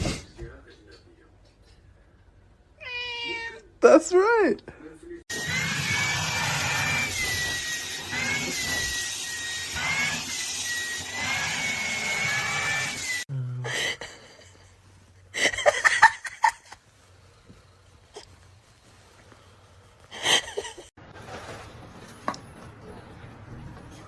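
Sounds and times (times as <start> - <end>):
small motor whining: 5.3 - 13.3.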